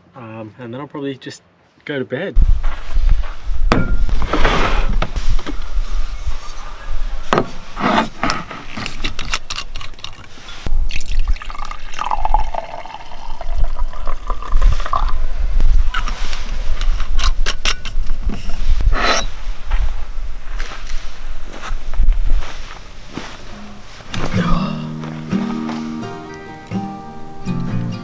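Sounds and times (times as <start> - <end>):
wine pouring into a glass: 10.7 - 15.4.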